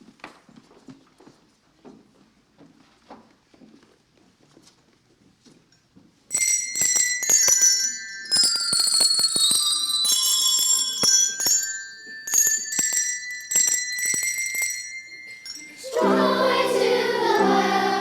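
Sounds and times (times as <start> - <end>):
small bells ringing: 6.3 - 18.0.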